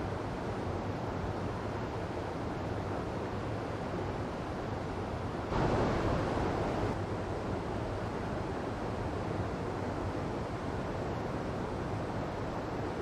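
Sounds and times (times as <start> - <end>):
small waterfall rushing: 5.5 - 7.0.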